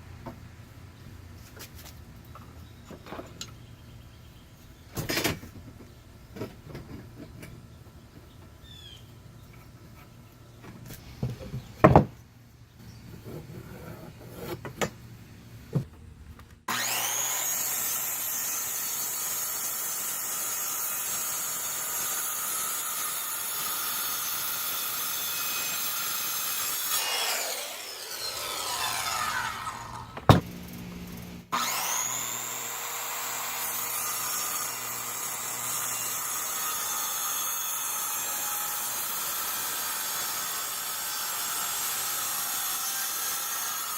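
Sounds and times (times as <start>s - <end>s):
wood and tools clattering: 4.9s - 7.7s
power saw cutting wood: 16.7s - 30.8s, 31.4s - 43.9s.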